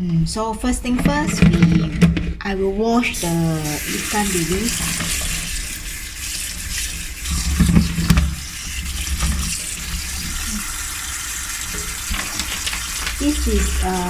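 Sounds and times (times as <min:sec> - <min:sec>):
tap water splashing into sink: 0:03.2 - 0:14.0.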